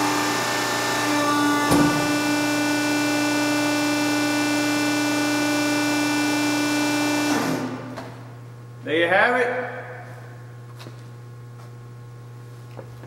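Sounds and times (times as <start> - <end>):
hydraulic press motor whining: 0.0 - 8.3.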